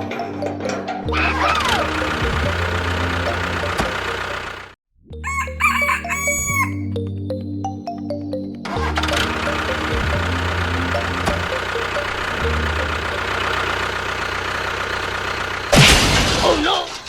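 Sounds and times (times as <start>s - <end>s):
low engine drone: 0.0s - 4.8s, 8.7s - 16.2s
rooster crowing: 5.2s - 6.9s.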